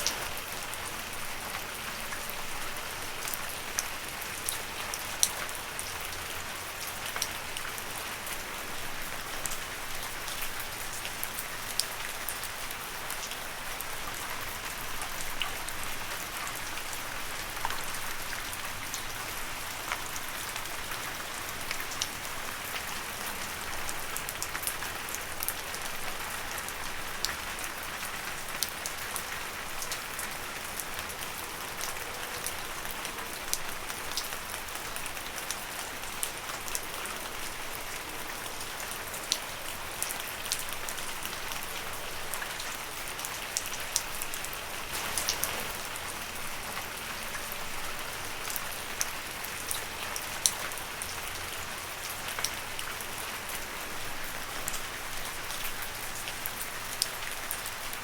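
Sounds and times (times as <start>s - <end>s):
rain on leaves: 0.0s - 58.0s
sharp water drips: 43.2s - 52.8s.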